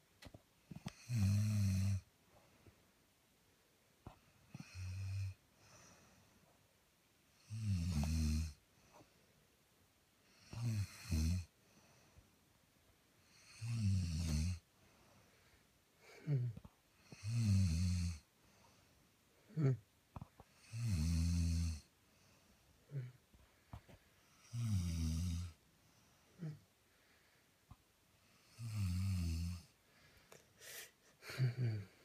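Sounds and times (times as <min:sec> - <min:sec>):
woman snoring: 0:00.8 - 0:02.1, 0:04.5 - 0:05.4, 0:07.4 - 0:08.6, 0:10.4 - 0:11.5, 0:13.3 - 0:14.6, 0:16.1 - 0:18.2, 0:19.5 - 0:19.8, 0:20.6 - 0:21.9, 0:24.4 - 0:25.6, 0:26.4 - 0:26.6, 0:28.4 - 0:29.8, 0:30.6 - 0:32.0.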